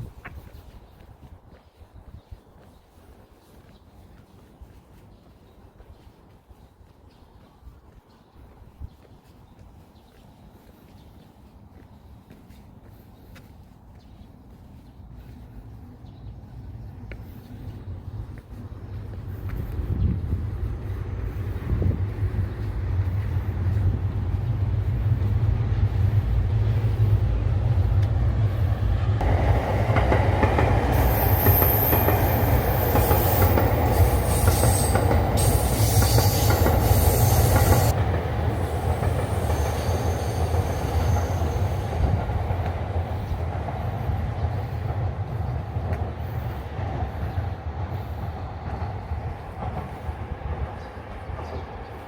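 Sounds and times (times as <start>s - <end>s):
electric train passing: 15.8s - 52.0s
high wheel squealing: 30.9s - 42.1s.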